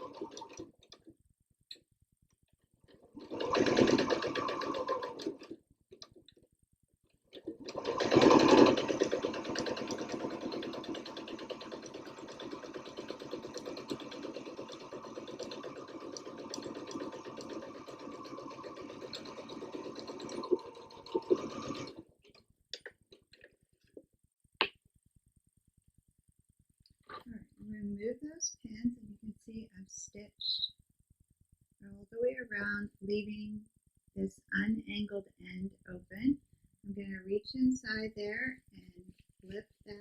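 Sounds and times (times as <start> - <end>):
sewing machine stitching: 0.0 - 1.1, 2.9 - 5.6, 7.4 - 22.4.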